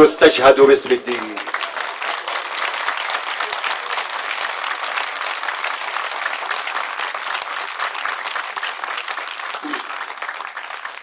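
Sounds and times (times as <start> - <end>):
audience applauding: 0.0 - 11.0.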